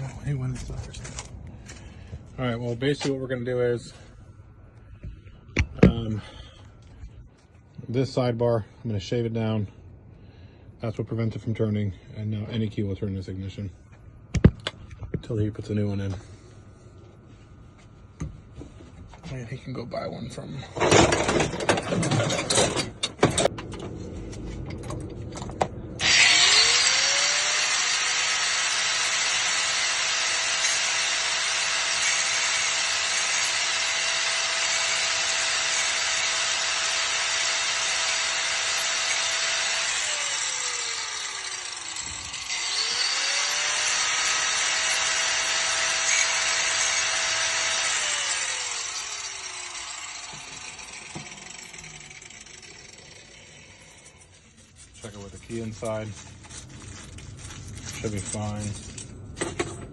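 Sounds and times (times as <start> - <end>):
power grinder whining: 26.0 - 55.9.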